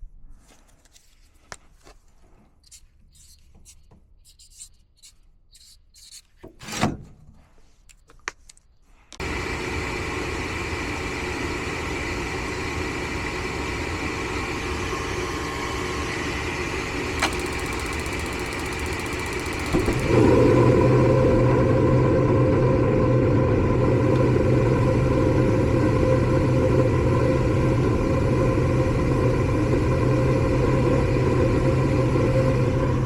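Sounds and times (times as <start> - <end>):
air conditioner condenser running: 9.2 - 33.0
low hum: 9.2 - 33.0.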